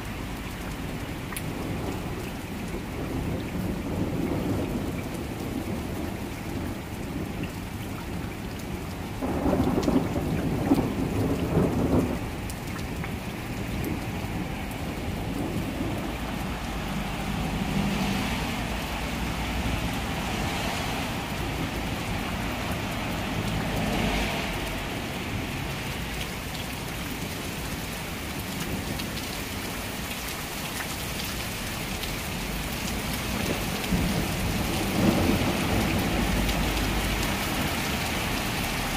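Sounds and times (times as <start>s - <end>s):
rain falling: 0.0s - 38.9s
thunder rumbling: 1.5s - 26.0s, 32.5s - 37.8s.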